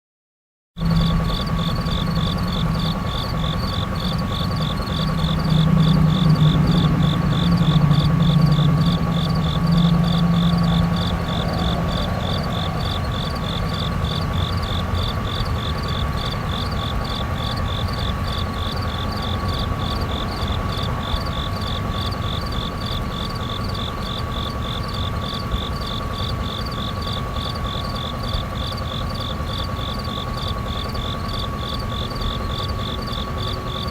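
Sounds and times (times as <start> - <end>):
crickets chirping: 0.8 - 33.9
distant airplane hum: 0.8 - 33.9
insect drone: 0.8 - 33.9.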